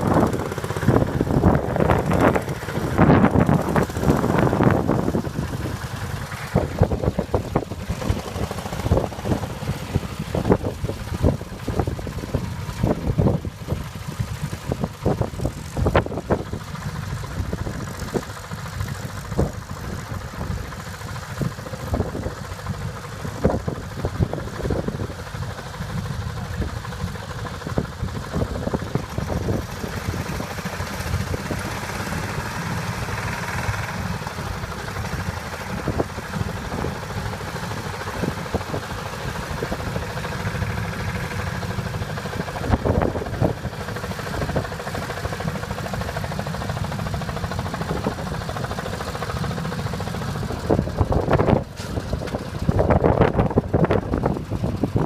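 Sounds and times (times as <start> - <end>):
tractor engine idling: 0.0 - 55.0.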